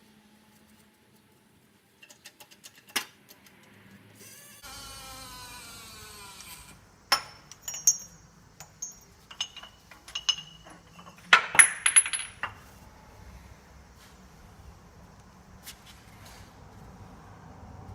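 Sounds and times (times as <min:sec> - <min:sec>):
tools clinking and knocking on steel: 0:07.1 - 0:12.6.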